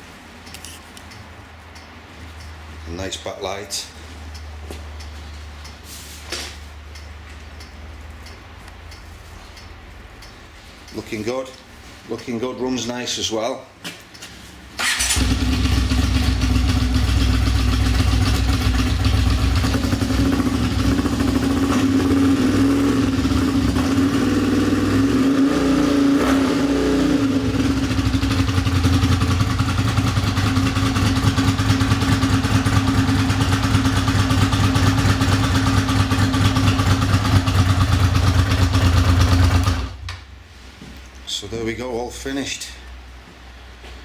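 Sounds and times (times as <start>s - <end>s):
motorcycle engine idling: 14.8s - 24.7s, 27.2s - 40.0s.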